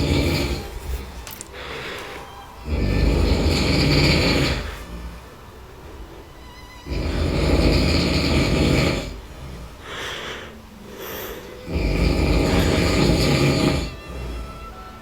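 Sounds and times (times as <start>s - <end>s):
man snoring: 0.0s - 0.8s, 2.6s - 5.2s, 6.8s - 14.8s
quiet breaths: 0.0s - 5.5s, 7.0s - 14.9s.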